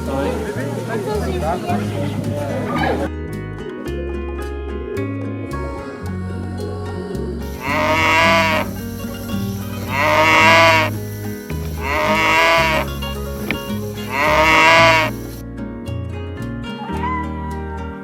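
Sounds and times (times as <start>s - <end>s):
background music: 0.0s - 18.0s
cattle bawling: 7.5s - 8.9s, 9.8s - 11.0s, 11.7s - 13.2s, 14.0s - 15.3s.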